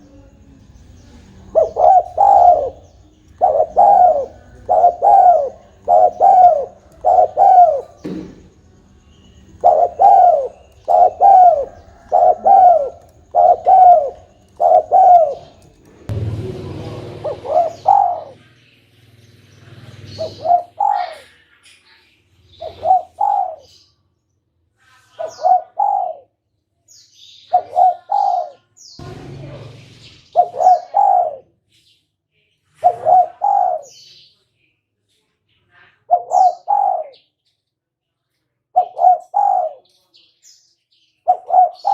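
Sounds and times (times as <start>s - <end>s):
small birds chirping: 0.0s - 41.9s
dove cooing: 1.4s - 8.6s, 9.5s - 18.5s, 19.2s - 21.4s, 22.6s - 23.8s, 25.2s - 26.3s, 27.5s - 31.5s, 32.8s - 34.0s, 36.1s - 37.2s, 38.8s - 39.8s, 41.3s - 41.9s
brief rushing noise: 16.0s - 18.4s, 29.0s - 31.2s.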